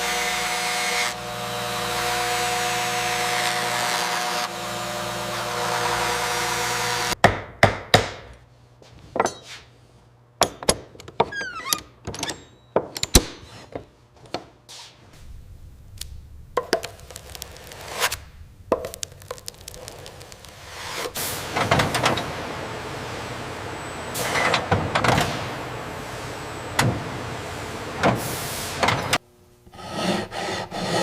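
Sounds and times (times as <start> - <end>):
machine humming: 15.2 - 29.7.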